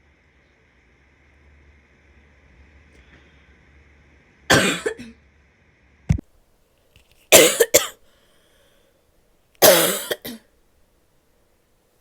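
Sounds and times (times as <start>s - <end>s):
woman coughing: 4.5s - 5.1s, 7.3s - 8.0s, 9.6s - 10.4s.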